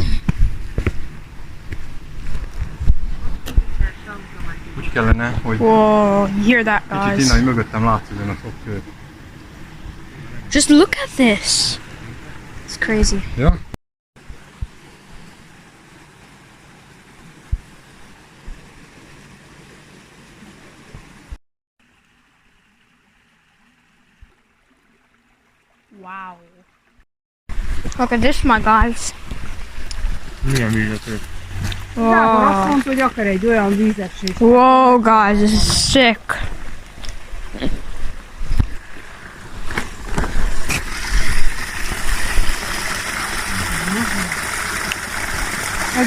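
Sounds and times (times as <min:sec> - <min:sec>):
wind rumble on microphone: 0:00.0 - 0:06.2
rushing water: 0:00.0 - 0:13.5, 0:14.2 - 0:46.0.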